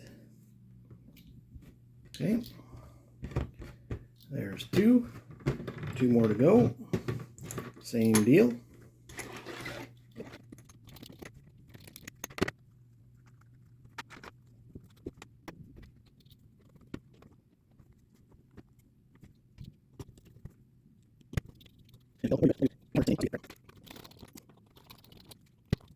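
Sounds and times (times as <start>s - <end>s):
small parts clicking and tapping: 10.1s - 25.9s.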